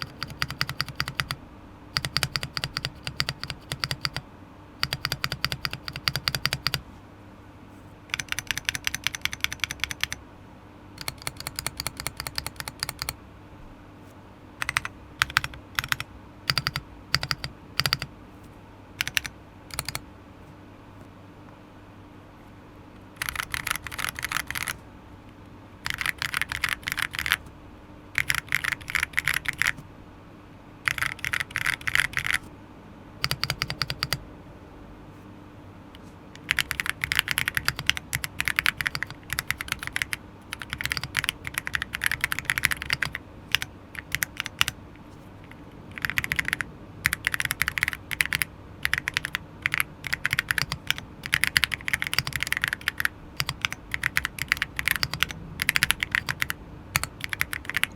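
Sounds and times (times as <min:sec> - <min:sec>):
mechanical keyboard clacks: 0:00.0 - 0:01.4, 0:02.0 - 0:04.2, 0:04.8 - 0:06.8, 0:08.1 - 0:10.2, 0:11.0 - 0:13.2, 0:14.6 - 0:18.1, 0:19.0 - 0:20.0, 0:23.2 - 0:24.8, 0:25.8 - 0:27.5, 0:28.2 - 0:29.8, 0:30.9 - 0:32.5, 0:33.2 - 0:34.2, 0:36.4 - 0:44.8, 0:45.4 - 0:57.9.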